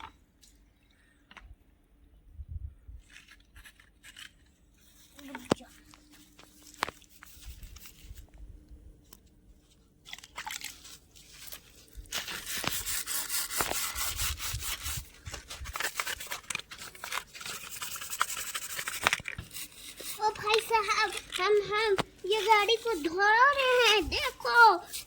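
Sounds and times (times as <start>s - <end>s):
toy car being scrubbed: 11.3s - 25.0s.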